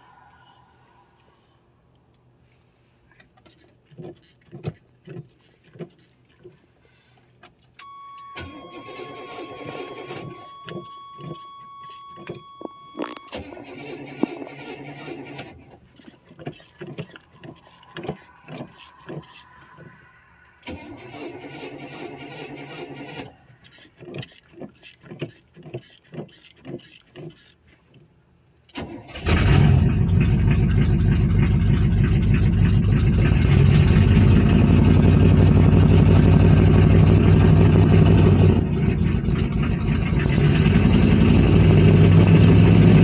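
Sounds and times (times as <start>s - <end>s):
steady warning chime: 7.8s - 13.4s
starter cranking engine: 8.3s - 19.9s, 20.5s - 24.3s, 28.7s - 43.0s.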